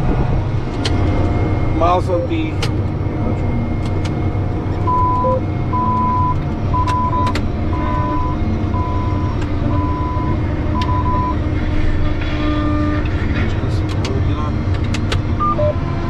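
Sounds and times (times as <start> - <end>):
tractor engine drone: 0.0 - 16.0
short electronic beeps: 4.9 - 11.4, 15.4 - 15.8.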